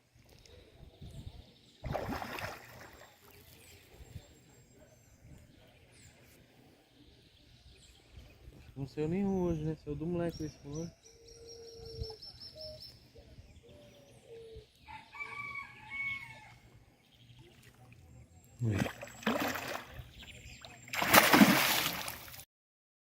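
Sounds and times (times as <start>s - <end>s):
rooster crowing: 14.8s - 16.6s.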